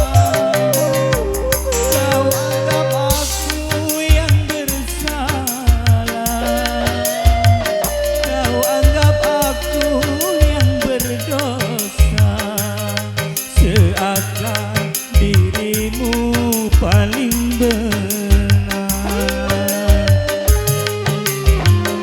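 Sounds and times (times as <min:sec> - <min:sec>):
keyboard lead melody: 0:00.0 - 0:05.5, 0:06.2 - 0:12.0, 0:19.0 - 0:22.0
repeating bass line: 0:00.0 - 0:12.8, 0:13.6 - 0:22.0
low drum hits: 0:01.1 - 0:04.9.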